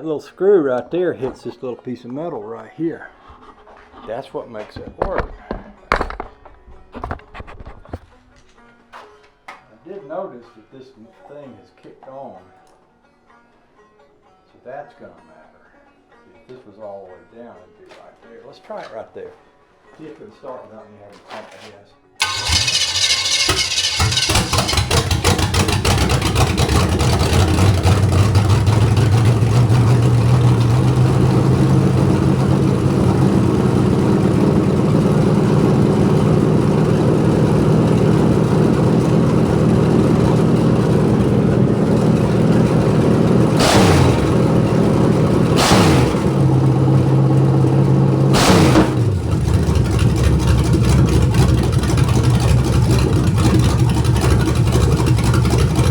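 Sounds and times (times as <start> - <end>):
car engine fast idle: 22.2 - 55.9
engine cranking and starting: 22.2 - 55.9
engine revving: 22.2 - 55.9.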